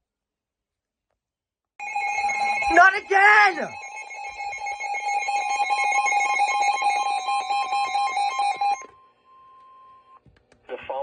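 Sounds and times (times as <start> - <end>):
harsh buzzing two-tone alert signal: 1.8 - 8.8.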